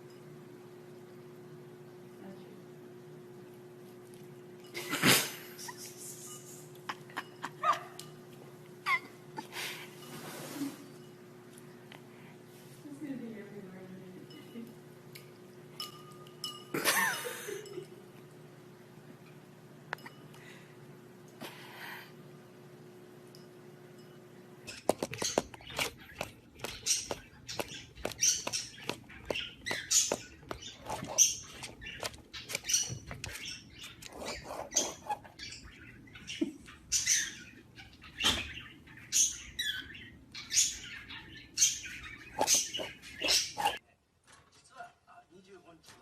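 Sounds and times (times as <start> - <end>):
parrot chirping and squawking: 24.7 - 43.8.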